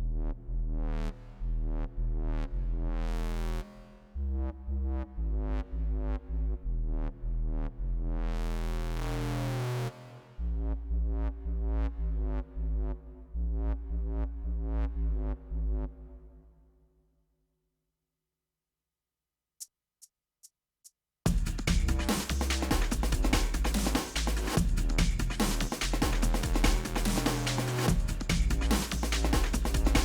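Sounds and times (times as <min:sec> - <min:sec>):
synthesizer bass and chords: 0:00.0 - 0:16.5, 0:21.3 - 0:30.0
programmed drum beat: 0:21.3 - 0:30.0.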